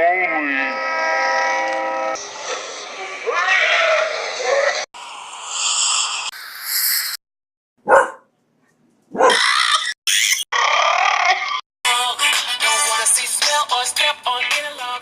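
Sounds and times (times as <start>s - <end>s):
dog-like barks: 7.8s - 8.3s, 9.1s - 9.4s.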